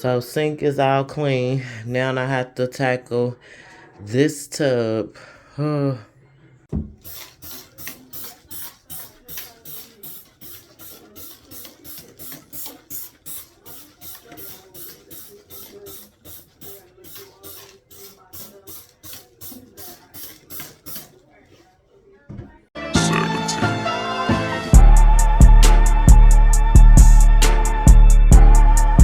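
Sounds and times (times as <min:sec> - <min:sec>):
bathtub being scrubbed: 0:06.8 - 0:21.8.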